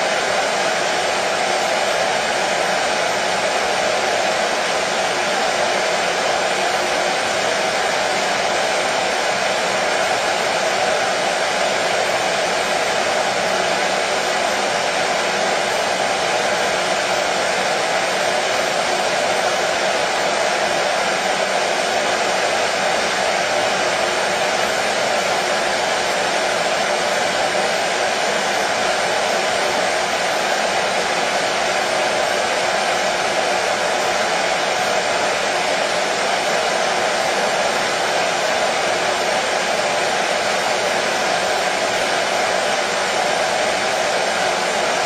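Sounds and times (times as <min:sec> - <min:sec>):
hair dryer running: 0:00.0 - 0:45.0.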